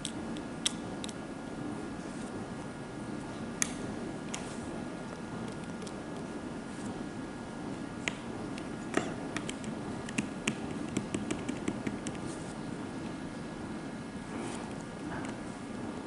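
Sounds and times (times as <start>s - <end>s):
faint room hum: 0.0s - 16.0s
pen tapping and clicking: 8.9s - 12.2s.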